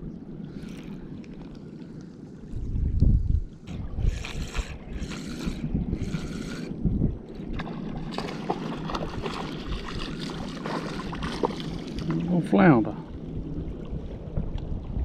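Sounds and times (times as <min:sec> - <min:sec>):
wind rumbling on microphone: 0:00.0 - 0:15.0
water splashing in shallows: 0:07.3 - 0:15.0.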